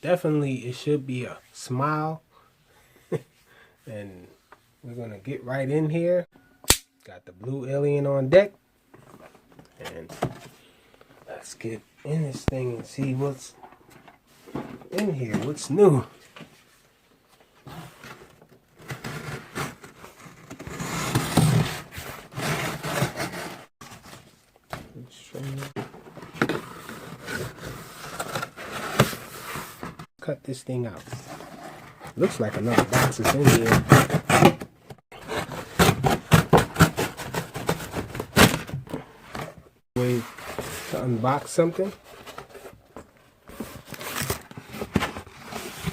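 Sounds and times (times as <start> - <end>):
cardboard and tape scraping: 17.7 - 24.4, 25.3 - 30.1, 31.0 - 42.8, 43.5 - 45.9.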